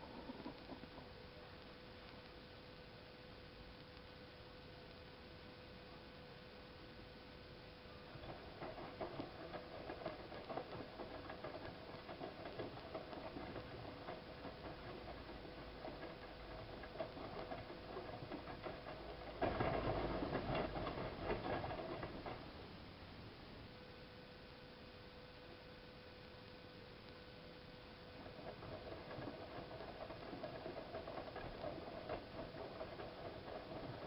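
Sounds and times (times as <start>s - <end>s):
washing machine motor hum: 7.6s - 23.0s, 27.6s - 34.0s.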